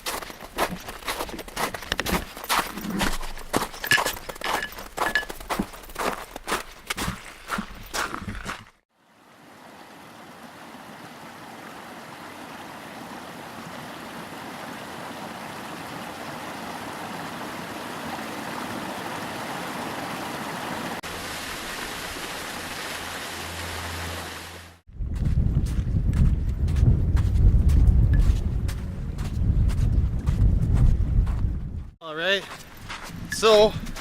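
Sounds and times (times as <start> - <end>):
stream rushing: 0.0 - 24.8.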